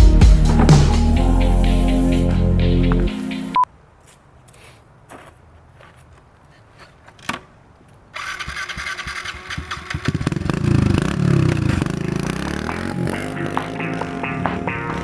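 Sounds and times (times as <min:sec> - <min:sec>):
engine revving: 0:08.2 - 0:15.0.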